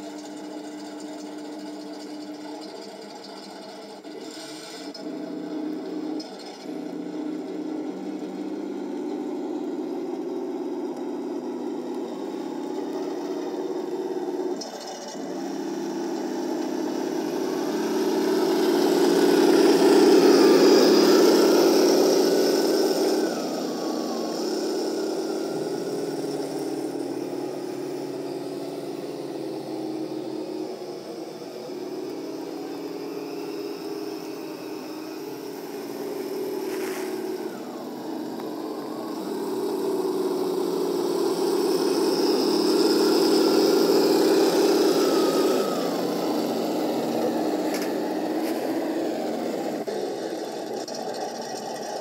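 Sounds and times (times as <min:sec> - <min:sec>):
toy motors whirring: 0:00.0 - 0:05.1
simulated engine sound: 0:00.0 - 0:52.0.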